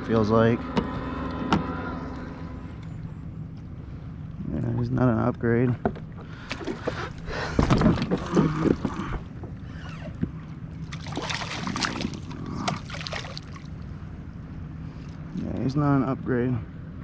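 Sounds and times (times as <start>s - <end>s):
kayak handling knocks and clicks: 5.8s - 9.6s
water sloshing: 5.8s - 15.3s.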